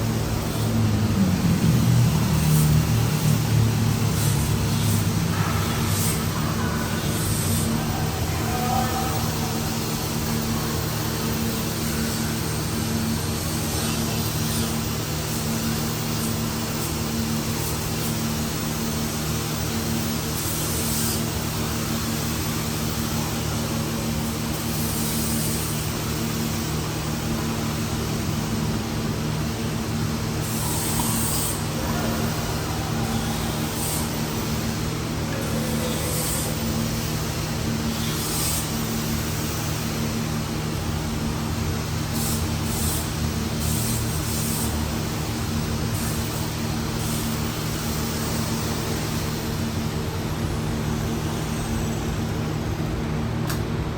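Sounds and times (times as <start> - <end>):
steady motor hum: 0.0 - 53.9
hiss: 2.2 - 27.0, 30.4 - 40.5, 41.8 - 49.8.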